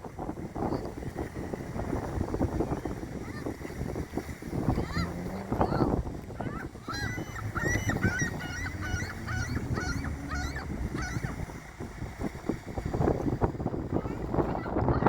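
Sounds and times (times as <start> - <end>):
low wind rumble: 0.0 - 15.0
seagulls calling: 2.7 - 12.6.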